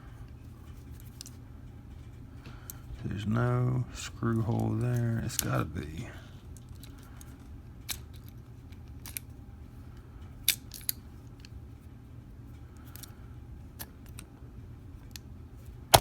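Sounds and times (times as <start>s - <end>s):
low hum: 0.0s - 7.7s.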